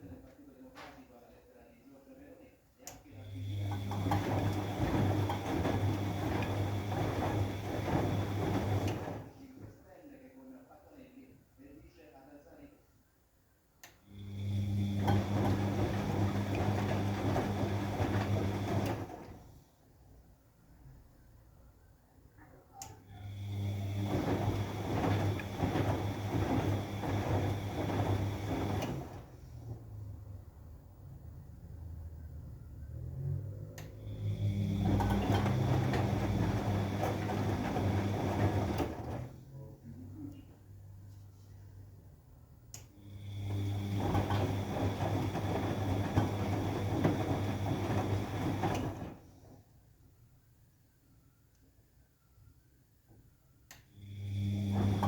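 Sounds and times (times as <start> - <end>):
washing machine motor humming: 3.1 - 9.4, 14.0 - 19.5, 22.8 - 30.1, 33.8 - 39.7, 42.8 - 49.6, 53.9 - 55.0
water and laundry swishing: 3.6 - 9.6, 14.8 - 19.6, 23.6 - 30.1, 34.3 - 39.6, 43.4 - 49.6, 54.6 - 55.0.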